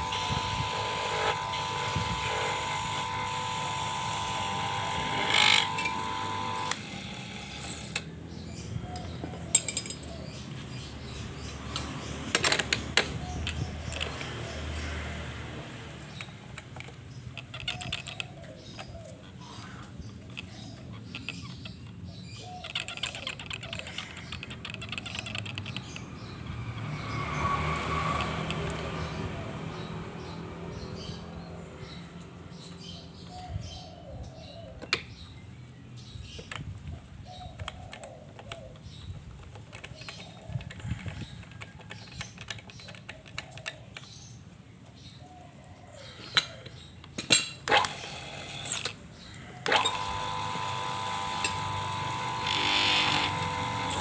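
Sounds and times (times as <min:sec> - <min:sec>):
motor whine: 0:00.0 - 0:08.1, 0:47.7 - 0:49.0, 0:49.6 - 0:54.0
parts tapping and clicking: 0:08.9 - 0:10.4, 0:11.7 - 0:14.8, 0:46.2 - 0:54.0.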